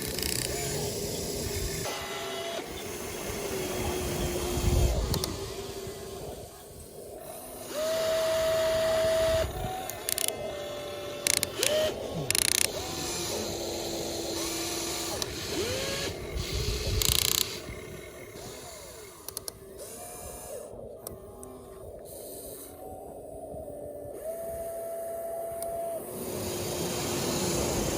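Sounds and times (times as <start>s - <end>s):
sharp clicks: 0.0s - 2.9s, 4.3s - 5.7s, 7.7s - 21.6s
small electric motors whining: 0.0s - 27.9s.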